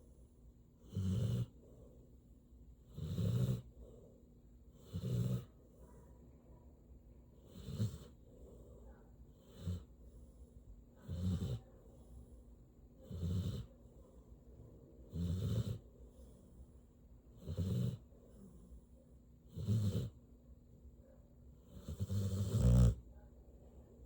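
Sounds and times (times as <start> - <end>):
dog snoring: 0.8 - 1.9, 2.8 - 4.1, 4.7 - 5.6, 7.4 - 8.7, 9.3 - 10.4, 11.0 - 11.8, 13.0 - 13.7, 15.1 - 16.6, 17.3 - 18.8, 19.5 - 20.2, 21.6 - 23.0.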